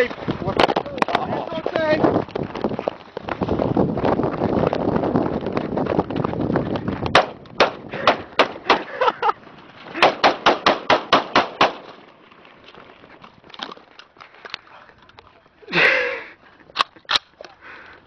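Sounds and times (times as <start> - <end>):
rifle firing rapid shots: 10.0 - 11.9.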